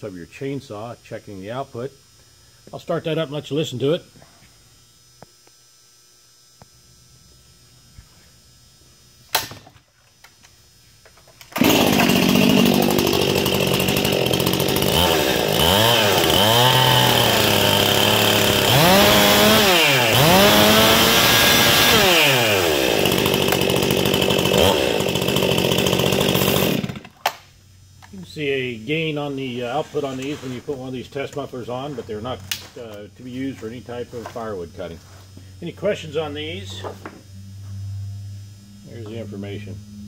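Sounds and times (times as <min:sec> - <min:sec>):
chainsaw starting and revving: 0:11.4 - 0:27.2.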